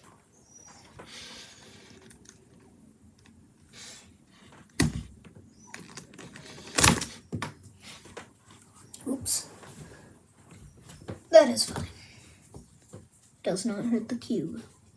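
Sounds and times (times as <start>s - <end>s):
sharp plastic clacks: 5.7s - 7.2s.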